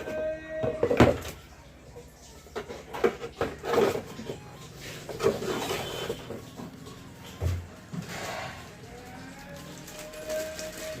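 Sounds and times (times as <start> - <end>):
cardboard packaging rustling: 8.1 - 11.0.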